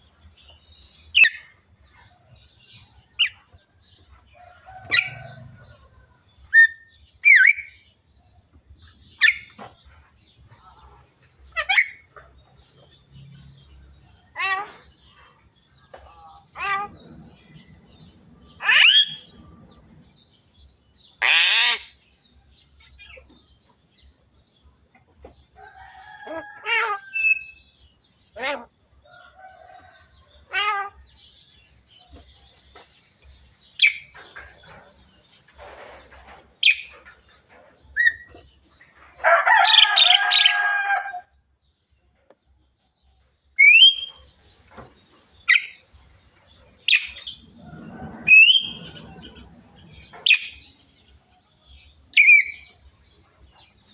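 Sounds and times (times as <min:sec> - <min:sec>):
bird whistles and harsh squawks: 0:18.6 - 0:19.3, 0:43.6 - 0:44.2, 0:48.2 - 0:49.3.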